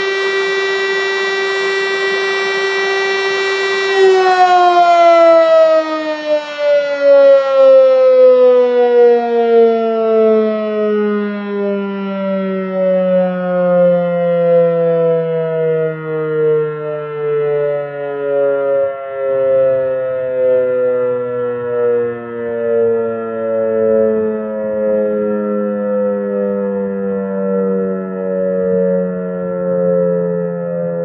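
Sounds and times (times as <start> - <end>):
siren winding down: 0.0 - 31.0.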